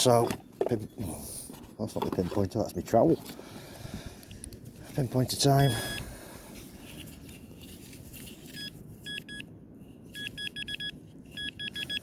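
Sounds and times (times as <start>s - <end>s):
metal detector beeping: 5.6s - 6.1s, 8.5s - 9.5s, 10.1s - 12.0s.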